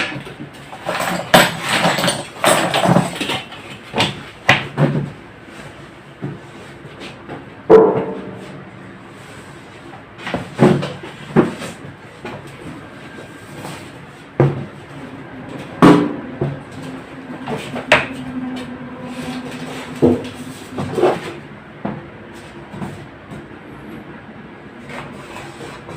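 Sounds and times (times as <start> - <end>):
metal parts knocking and clunking: 0.0 - 5.1.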